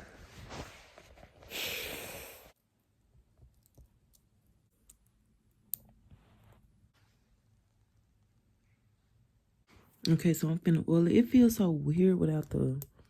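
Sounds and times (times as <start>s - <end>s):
soft rustle: 0.0s - 2.6s, 6.0s - 7.4s.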